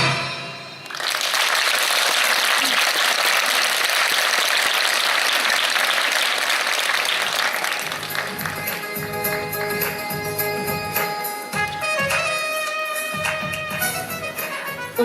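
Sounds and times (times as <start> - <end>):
music: 0.0 - 0.9, 7.3 - 15.0
audience applauding: 0.8 - 12.3.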